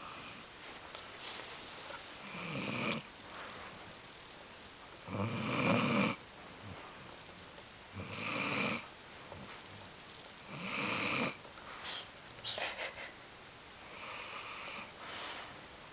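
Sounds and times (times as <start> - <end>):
dog snoring: 2.2 - 3.1, 5.0 - 6.8, 7.9 - 9.6, 10.4 - 11.4, 13.8 - 15.4.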